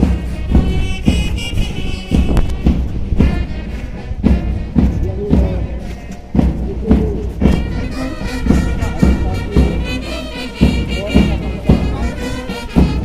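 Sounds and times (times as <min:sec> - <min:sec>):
music with heavy drum beat: 0:00.0 - 0:13.0.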